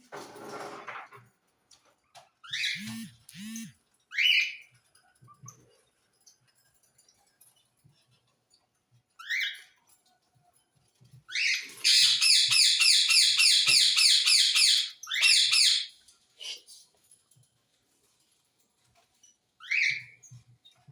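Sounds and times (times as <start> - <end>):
parrot screeching: 11.3 - 15.9.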